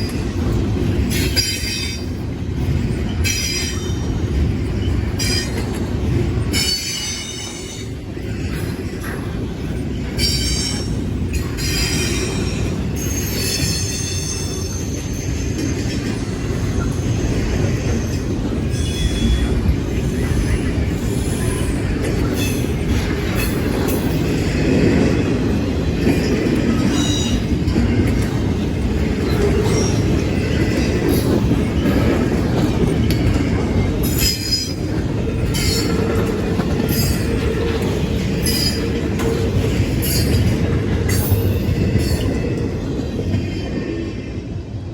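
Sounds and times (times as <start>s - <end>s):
freight train cars rumbling: 0.0s - 44.9s.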